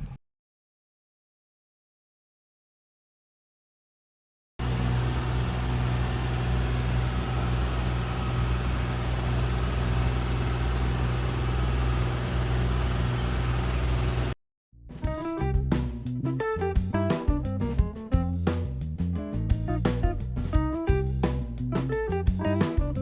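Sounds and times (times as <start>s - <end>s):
vehicle engine humming: 4.6s - 14.4s.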